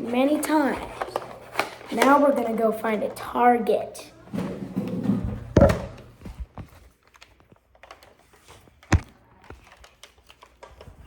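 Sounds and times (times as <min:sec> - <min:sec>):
loud thump: 0:05.6 - 0:06.0.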